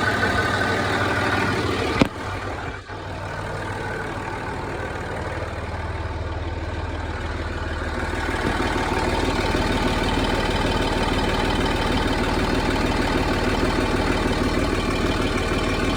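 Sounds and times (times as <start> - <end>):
diesel engine idling: 0.0 - 15.9
engine ticking clatter: 0.0 - 15.9.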